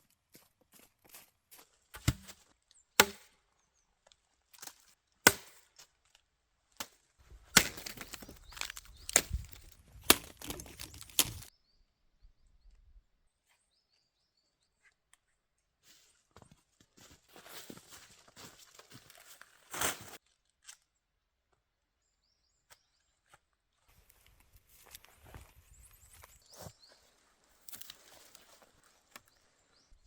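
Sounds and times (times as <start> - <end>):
axe chopping wood: 2.0 - 2.4, 3.0 - 3.3, 5.2 - 5.6, 7.5 - 11.5
wood splintering crackle: 7.5 - 11.5.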